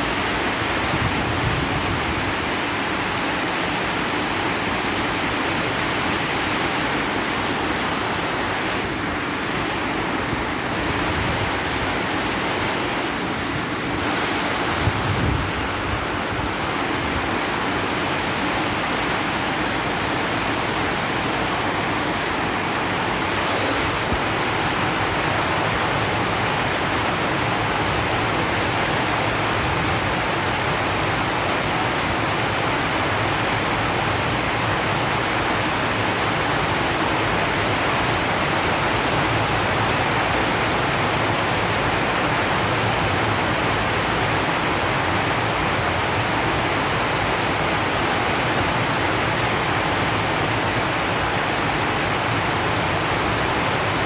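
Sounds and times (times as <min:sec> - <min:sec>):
heavy rain on a metal roof: 0:00.0 - 0:54.0.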